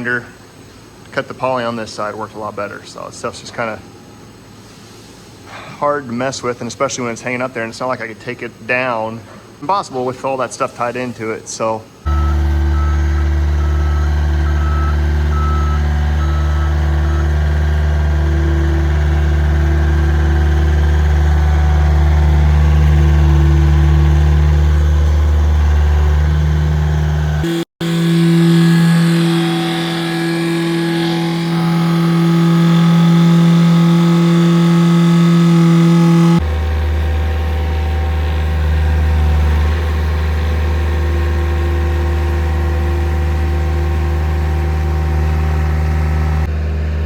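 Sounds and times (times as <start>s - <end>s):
reversing alarm beeps: 12.1s - 17.6s
vehicle engine running: 12.1s - 28.0s, 30.4s - 47.0s
steady engine hum: 12.1s - 47.0s.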